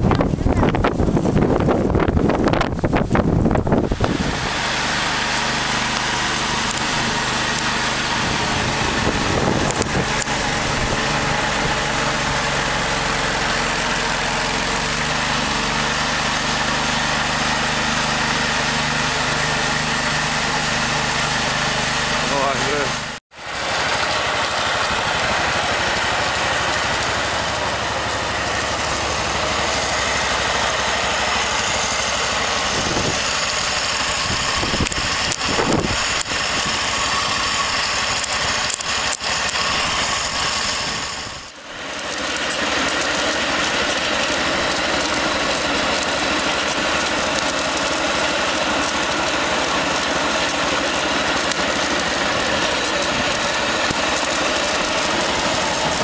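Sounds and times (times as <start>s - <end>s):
car engine running: 0.0s - 56.0s
road and cabin noise: 6.6s - 13.1s, 22.4s - 56.0s.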